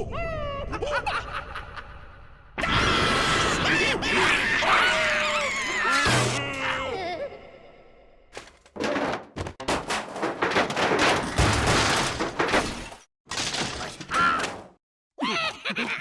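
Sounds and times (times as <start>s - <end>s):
cartoon crashes and knocks: 5.8s - 6.6s, 8.4s - 14.8s.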